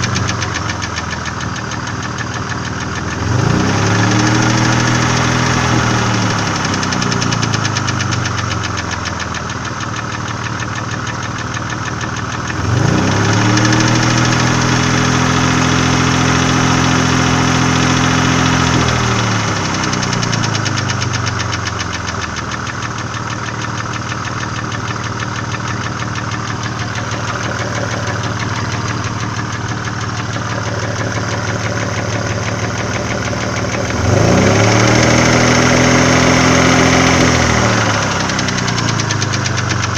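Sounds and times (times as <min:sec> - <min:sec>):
rapid valvetrain tapping: 0:00.0 - 0:03.4, 0:18.1 - 0:36.5, 0:37.5 - 0:39.9
car engine running: 0:00.0 - 0:39.9.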